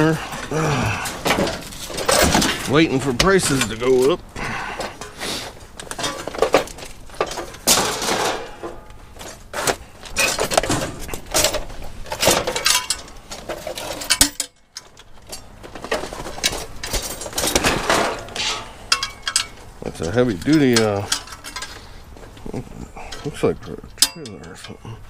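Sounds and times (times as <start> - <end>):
scrap metal clanking: 0.0 - 25.0.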